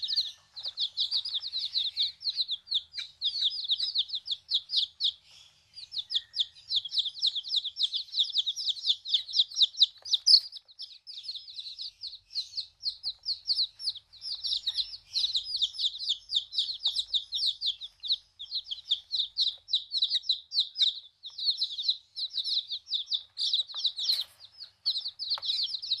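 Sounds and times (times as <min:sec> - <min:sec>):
chicks peeping: 0:00.0 - 0:26.0.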